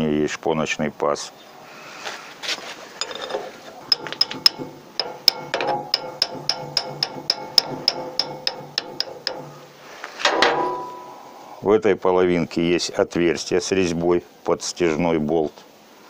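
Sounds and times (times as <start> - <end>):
metal-on-metal tapping: 3.0 - 11.4.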